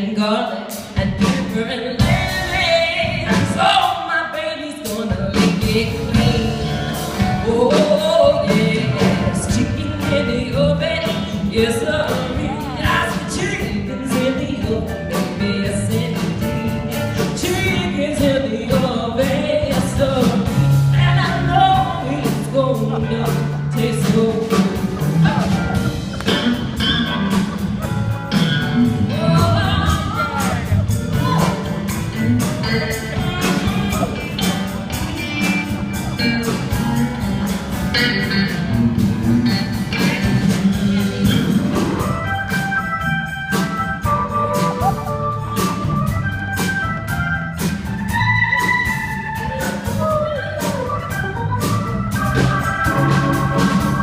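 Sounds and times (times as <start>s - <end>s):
woman singing: 0.0s - 25.7s, 28.9s - 34.6s, 48.1s - 51.8s
instrumental accompaniment: 4.8s - 54.0s.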